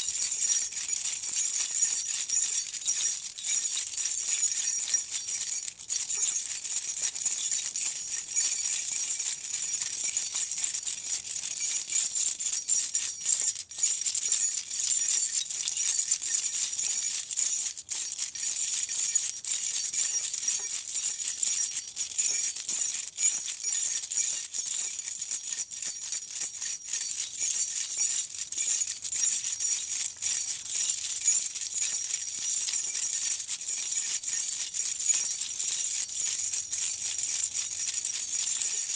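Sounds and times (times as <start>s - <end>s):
metal keys jangling: 0.0s - 8.5s.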